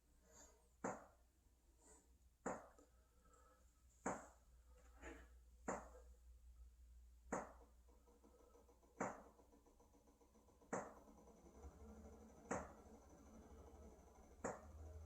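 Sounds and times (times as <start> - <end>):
faint low hum: 1.6 - 15.0.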